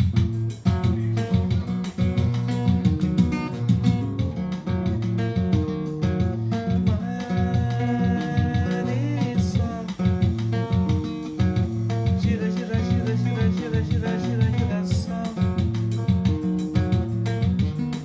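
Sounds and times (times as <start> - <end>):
acoustic guitar strumming with bass line: 0.0 - 18.0.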